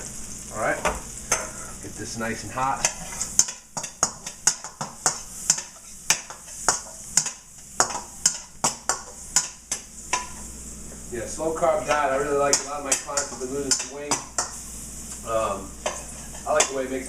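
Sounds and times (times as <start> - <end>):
butter sizzling: 0.0 - 17.0
utensil scraping a frying pan: 2.6 - 10.6, 11.4 - 17.0.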